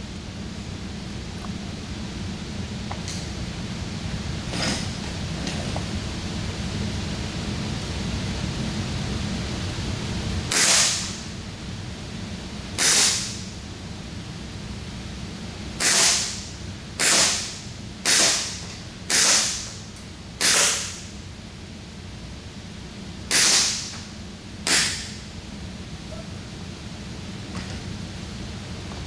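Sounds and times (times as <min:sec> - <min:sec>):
airsoft pistol shots: 0:10.5 - 0:11.2, 0:12.8 - 0:13.4, 0:15.8 - 0:16.4, 0:17.0 - 0:19.7, 0:20.4 - 0:21.0, 0:23.3 - 0:23.9, 0:24.7 - 0:25.2.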